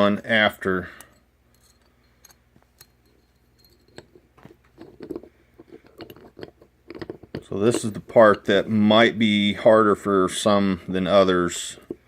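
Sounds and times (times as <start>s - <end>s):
metal parts clicking and scraping: 0.9s - 8.5s.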